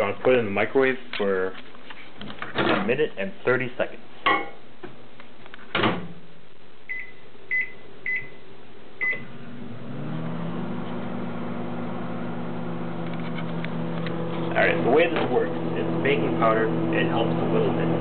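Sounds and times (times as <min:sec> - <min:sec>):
thump: 0:05.7 - 0:06.2
keypad beeps: 0:06.9 - 0:08.4
microwave oven humming: 0:06.9 - 0:18.0.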